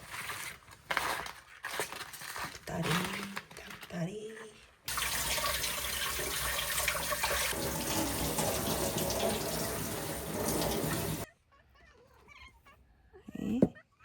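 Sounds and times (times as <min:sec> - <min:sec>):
water running from a tap into a sink: 0:04.9 - 0:11.3.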